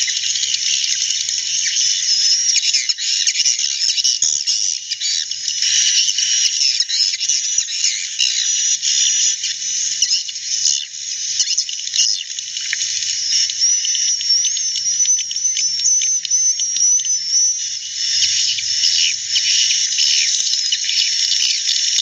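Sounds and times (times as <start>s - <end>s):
swiftlets twittering: 9.3s - 22.0s.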